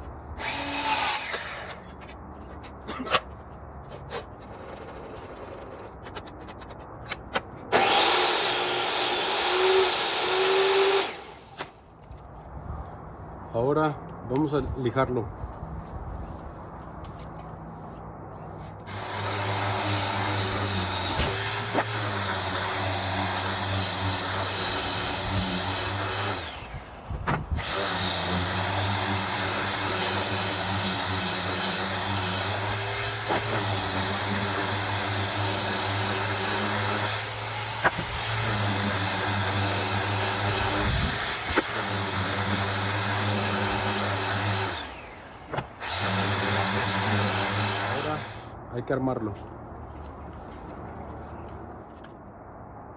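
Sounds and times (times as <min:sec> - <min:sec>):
electric sander on wood: 0:07.8 - 0:11.7, 0:18.9 - 0:48.5.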